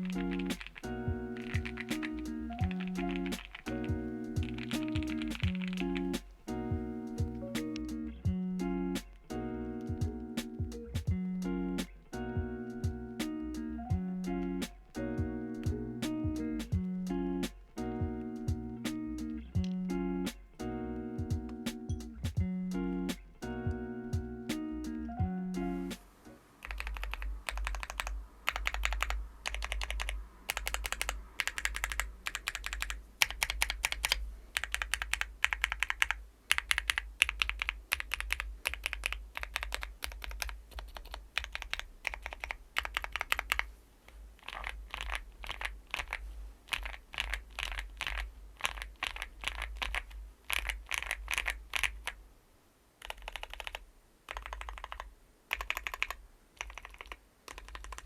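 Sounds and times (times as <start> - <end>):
mechanical keyboard keys clacking: 0.0 - 3.8, 4.4 - 6.1, 26.6 - 43.7, 44.4 - 52.2, 53.0 - 58.0.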